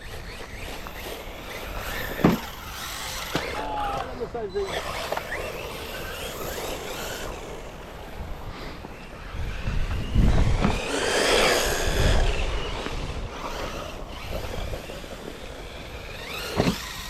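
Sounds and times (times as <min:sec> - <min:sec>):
rc car motors whining: 0:00.0 - 0:17.0.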